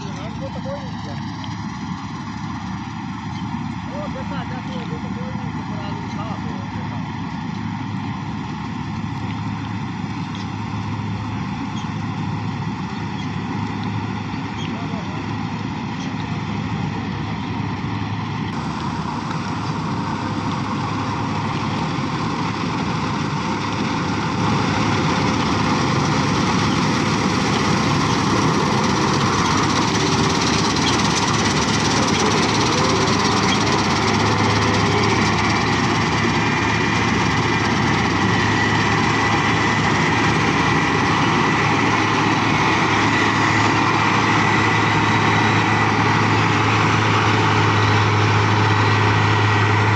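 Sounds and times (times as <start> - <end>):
combine harvester running: 0.0 - 49.9.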